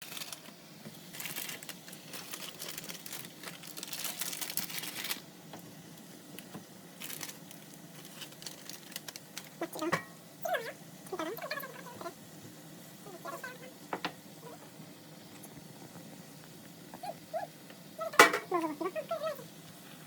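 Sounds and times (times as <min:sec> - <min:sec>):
close-up crinkling and rustling: 0:00.0 - 0:05.7, 0:06.3 - 0:09.9.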